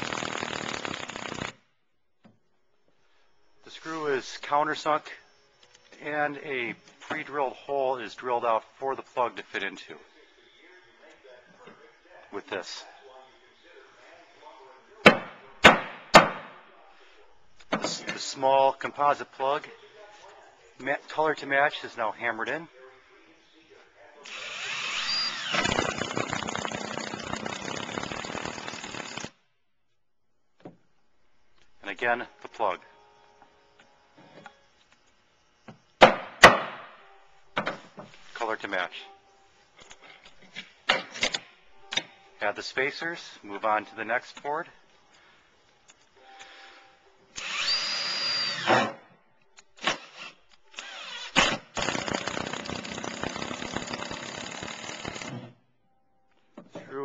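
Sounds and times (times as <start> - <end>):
power driver whine: 24.3 - 29.3, 47.3 - 48.9, 49.8 - 55.4.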